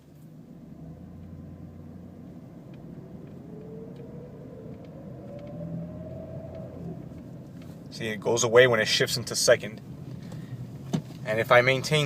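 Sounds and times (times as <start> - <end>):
car engine and road rumble: 0.0 - 12.0
transmission whine rising in pitch: 2.8 - 7.4.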